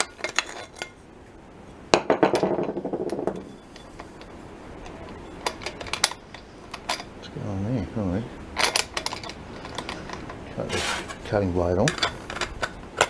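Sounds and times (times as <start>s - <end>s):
metal clinking: 8.6s - 10.4s.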